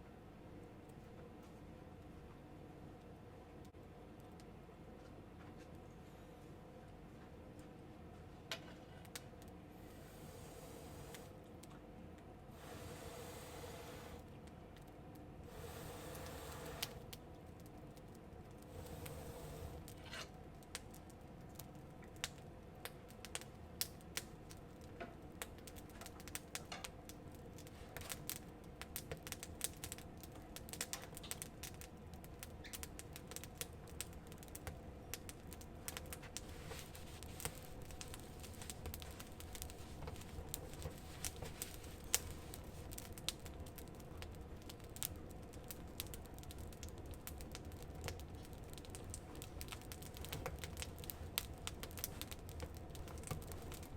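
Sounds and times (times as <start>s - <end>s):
campfire crackling: 12.5s - 53.9s.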